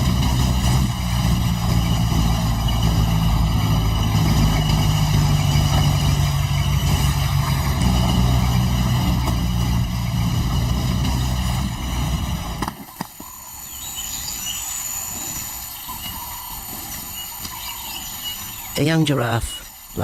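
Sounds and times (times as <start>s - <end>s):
engine droning: 0.0s - 20.0s
high chirping bird calls: 13.2s - 20.0s.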